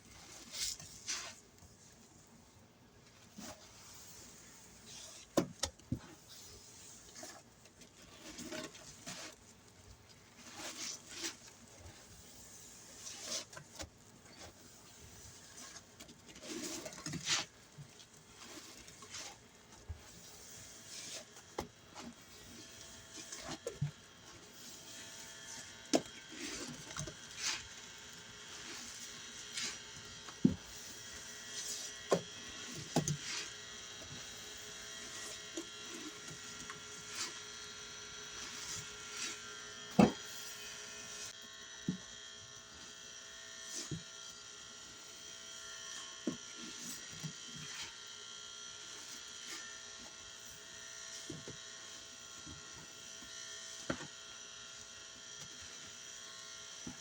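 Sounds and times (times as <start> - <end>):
soapy sponge squelching: 0.1 - 1.6.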